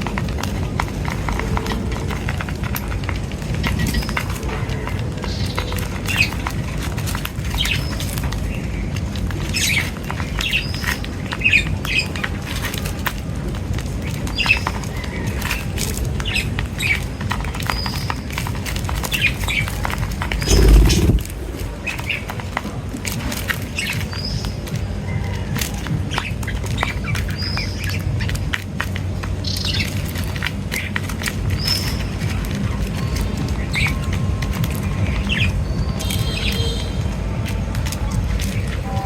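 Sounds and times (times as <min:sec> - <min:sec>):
small birds chirping: 0:20.4 - 0:21.2
steady low rumble: 0:20.4 - 0:21.4
loud low thump: 0:20.5 - 0:21.3.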